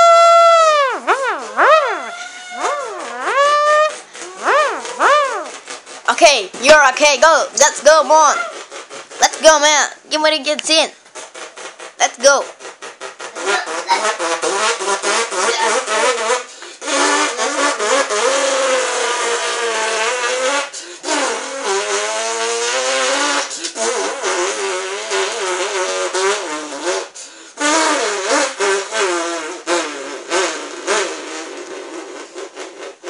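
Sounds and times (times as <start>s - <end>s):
person imitating car engine: 0.0s - 8.6s, 9.2s - 10.9s, 13.3s - 19.7s.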